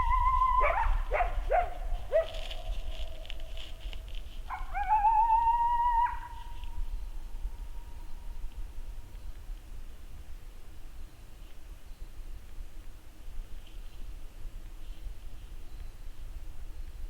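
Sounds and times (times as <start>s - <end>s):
coyote howling: 0.0s - 3.8s, 4.5s - 6.8s
wind rumble on microphone: 0.0s - 17.0s.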